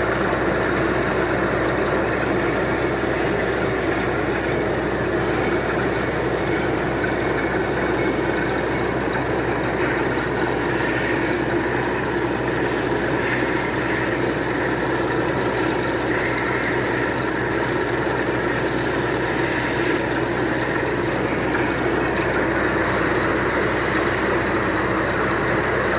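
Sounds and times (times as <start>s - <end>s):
drilling rig boring into rock: 0.0s - 25.9s.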